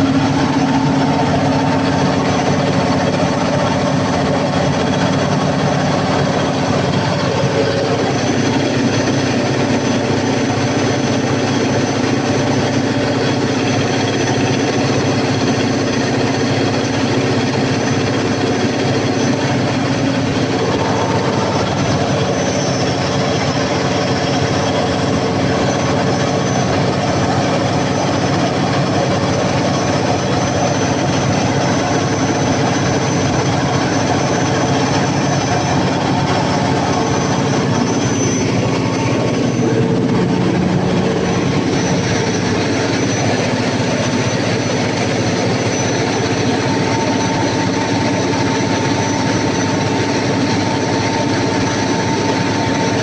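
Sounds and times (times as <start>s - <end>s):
thin high whine: 0.0s - 15.2s, 16.1s - 53.0s
diesel generator drone: 0.0s - 53.0s.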